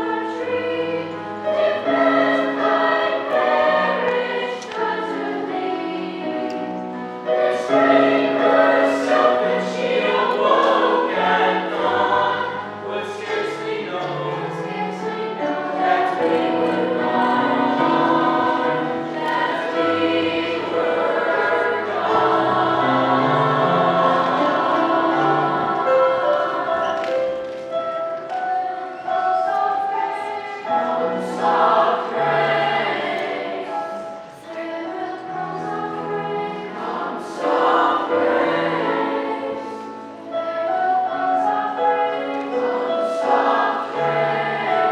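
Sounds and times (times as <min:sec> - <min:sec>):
choir singing: 0:00.0 - 0:44.9.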